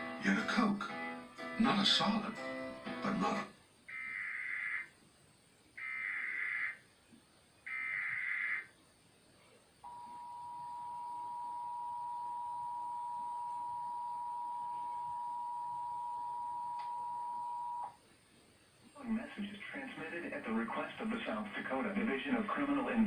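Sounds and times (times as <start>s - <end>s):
steady two-tone attention signal: 9.9s - 17.9s.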